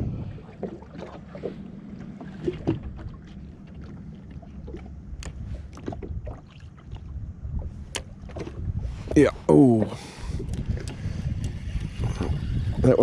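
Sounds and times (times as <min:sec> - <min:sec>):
knocks and splashes: 0:00.0 - 0:08.7
low rumble: 0:00.0 - 0:13.0
water lapping against a hull: 0:00.0 - 0:13.0.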